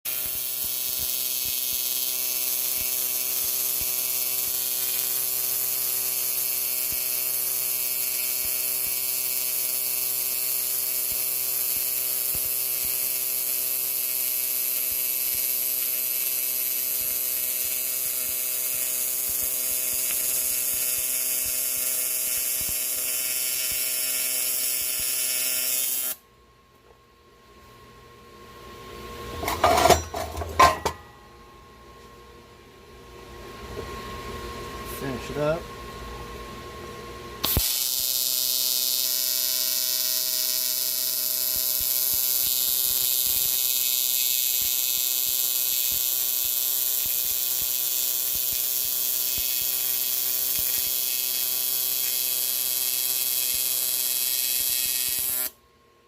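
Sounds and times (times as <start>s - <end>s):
welding arc buzzing and hissing: 0.1s - 26.2s, 37.4s - 55.6s.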